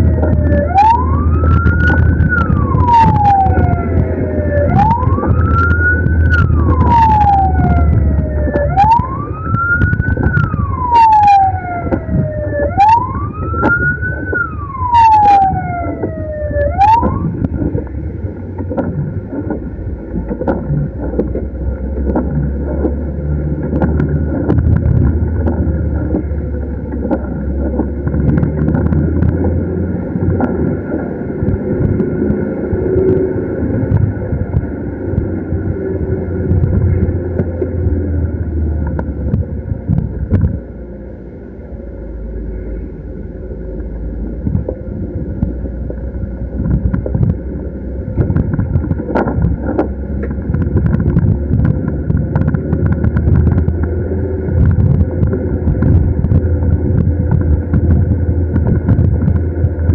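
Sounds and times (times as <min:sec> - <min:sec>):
ambulance siren wailing: 0:00.0 - 0:39.9
vehicle engine and road noise: 0:00.0 - 0:59.9.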